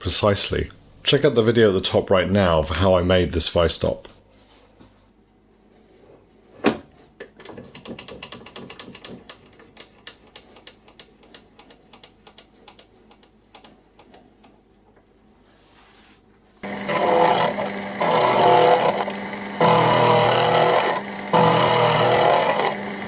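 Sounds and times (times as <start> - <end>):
quick irregular clicks and taps: 7.7 - 15.2.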